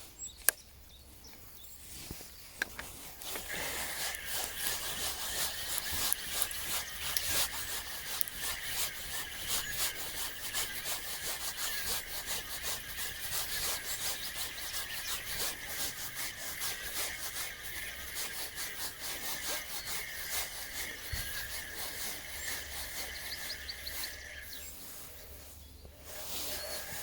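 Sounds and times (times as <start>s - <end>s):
fishing reel whirring: 3.2s - 24.6s.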